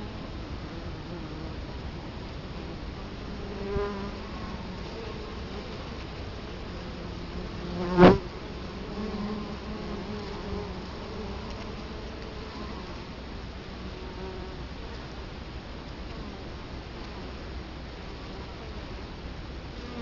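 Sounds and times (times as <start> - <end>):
bees buzzing at hive: 0.0 - 15.1, 19.7 - 20.0.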